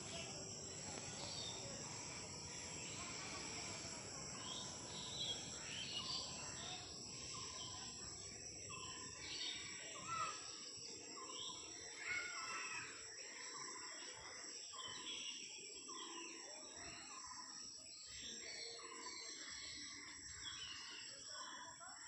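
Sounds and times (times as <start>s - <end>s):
high-pitched insect drone: 0.0s - 10.6s
small birds chirping: 0.0s - 21.3s.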